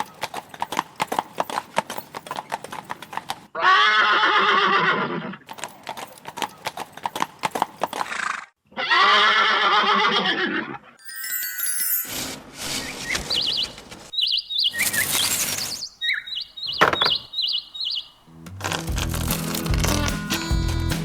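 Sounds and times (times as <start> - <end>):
hooves clip-clopping: 0.0 - 3.5, 5.5 - 8.4
horse neighing: 3.6 - 5.4.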